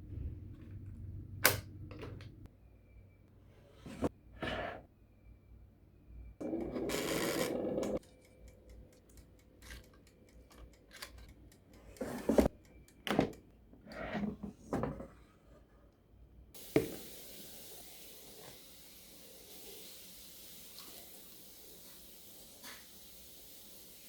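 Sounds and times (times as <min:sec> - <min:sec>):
steady hiss: 0:16.6 - 0:24.0.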